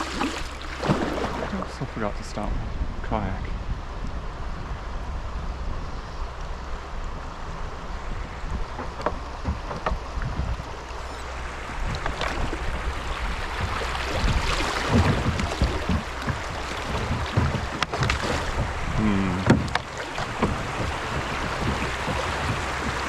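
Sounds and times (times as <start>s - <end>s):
creek water rushing: 0.0s - 2.4s, 10.6s - 23.0s
steady low rumble: 0.0s - 23.0s
sharp knocks: 13.4s - 23.0s.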